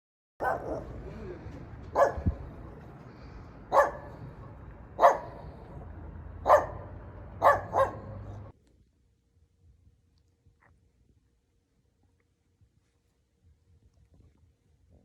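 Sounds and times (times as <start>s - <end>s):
dog barking: 0.4s - 1.0s, 1.9s - 2.5s, 3.7s - 5.8s, 6.4s - 8.5s.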